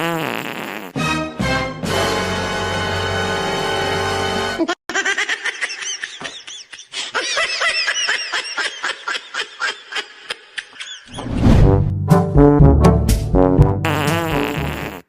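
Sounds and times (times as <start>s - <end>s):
loud comic music: 11.6s - 13.9s.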